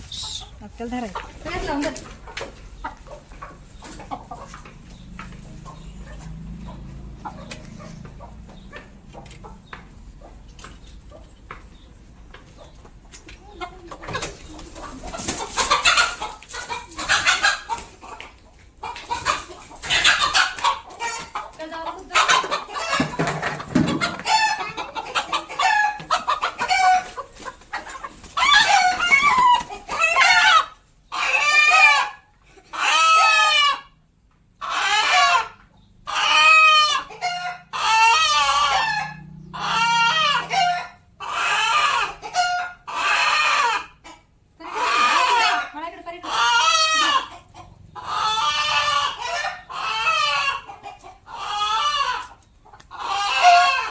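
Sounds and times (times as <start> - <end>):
chickens clucking: 0.0 - 53.9
roosters crowing: 14.0 - 34.0, 34.6 - 53.9.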